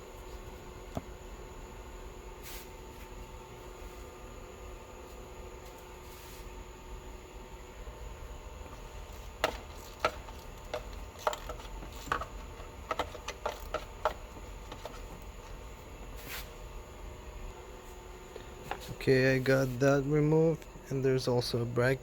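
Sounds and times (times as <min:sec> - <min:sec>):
faint steady hum: 0:00.0 - 0:22.0
tools clicking on engine parts: 0:09.1 - 0:15.3.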